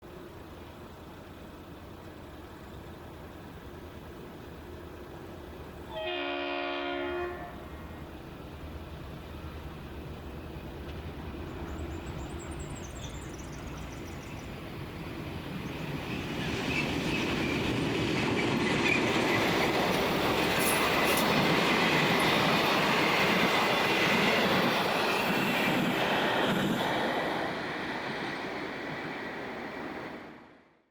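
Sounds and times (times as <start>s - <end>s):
wheels rumbling on rail: 0.0s - 30.7s
train engines passing: 0.0s - 30.9s
diesel locomotive horn blast: 5.9s - 8.1s.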